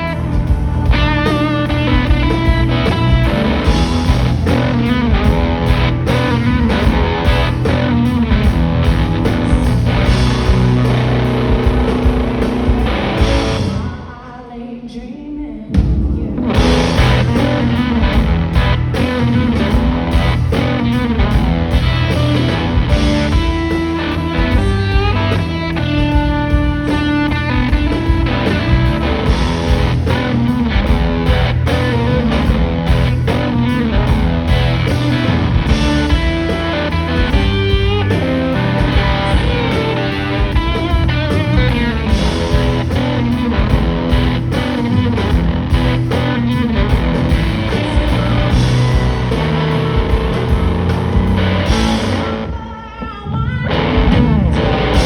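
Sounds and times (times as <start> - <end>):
live blues-rock band playing: 0.0 - 14.1, 15.7 - 55.0.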